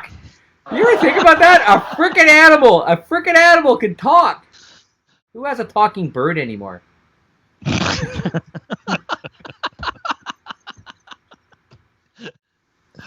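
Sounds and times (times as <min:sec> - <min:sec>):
person laughing: 0:00.8 - 0:02.2, 0:07.6 - 0:12.4.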